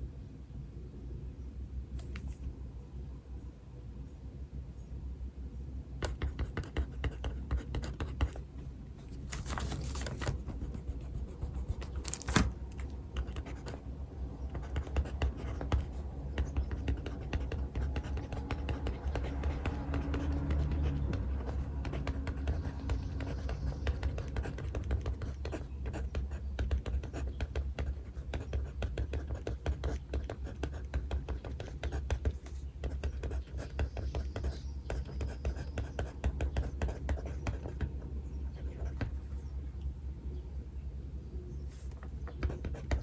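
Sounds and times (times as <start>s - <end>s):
pen scratching on paper: 6.0s - 12.6s, 13.2s - 13.8s, 14.5s - 37.9s, 38.5s - 39.2s, 41.7s - 43.0s
paper rustle: 9.0s - 10.7s, 11.8s - 12.9s.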